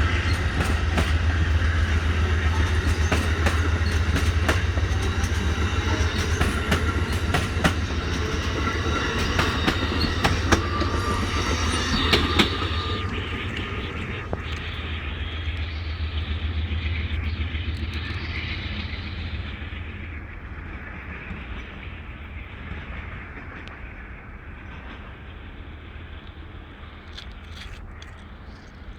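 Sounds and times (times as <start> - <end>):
train wheels clicking over rail joints: 0.0 - 19.0
train rumble: 0.0 - 28.9.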